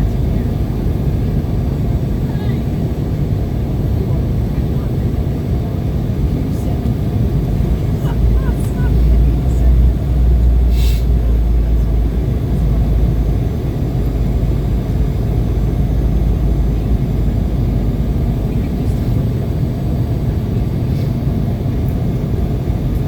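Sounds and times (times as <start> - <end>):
airliner cabin engine rumble: 0.0 - 23.0.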